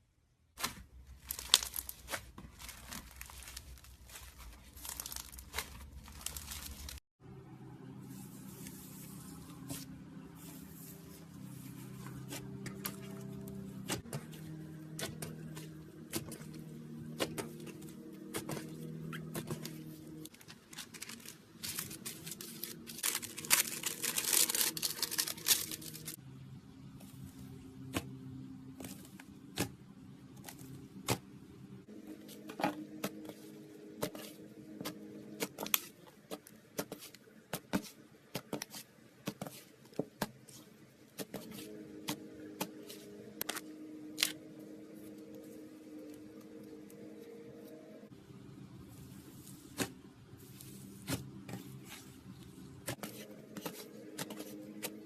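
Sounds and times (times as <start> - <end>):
slime crackling: 0.6 - 7.0.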